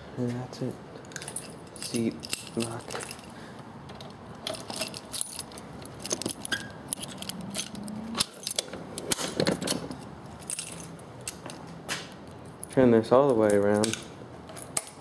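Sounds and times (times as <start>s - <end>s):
keys jangling on a key ring: 1.1s - 3.4s, 4.4s - 8.7s, 9.6s - 11.5s.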